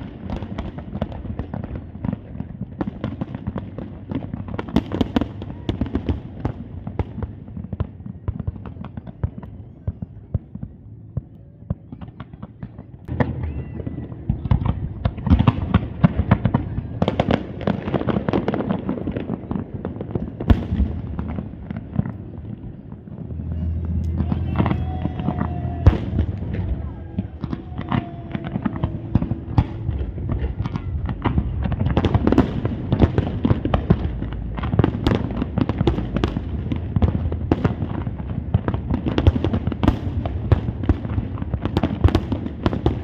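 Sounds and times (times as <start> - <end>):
fireworks bursting and crackling: 0.0 - 43.0
low rumble: 19.3 - 42.5.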